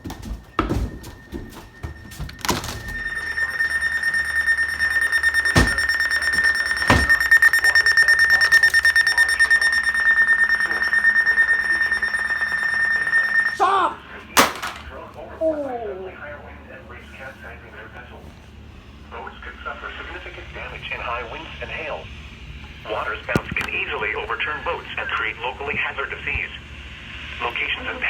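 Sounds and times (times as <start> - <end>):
high-pitched alarm tone: 0.0 - 14.8.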